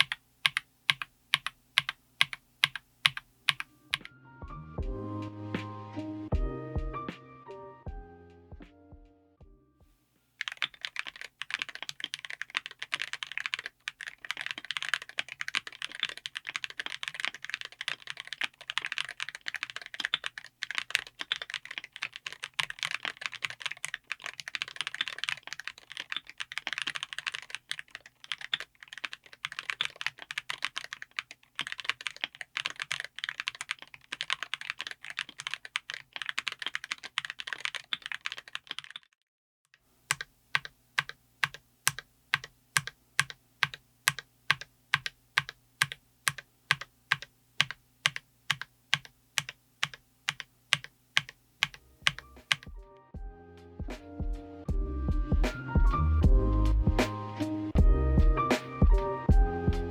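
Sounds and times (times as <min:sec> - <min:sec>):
typing on mechanical keyboard: 0:00.0 - 0:04.1, 0:10.4 - 0:39.2, 0:40.1 - 0:52.8.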